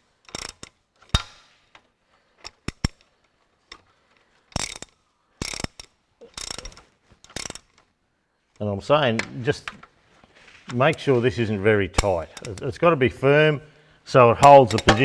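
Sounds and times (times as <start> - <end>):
socket ratchet clicking: 0.0 - 3.9, 4.5 - 7.9, 12.0 - 12.8, 14.4 - 15.0.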